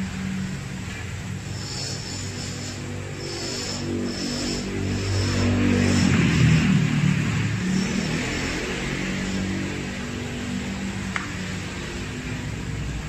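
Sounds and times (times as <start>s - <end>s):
welding arc buzzing: 1.1s - 11.2s.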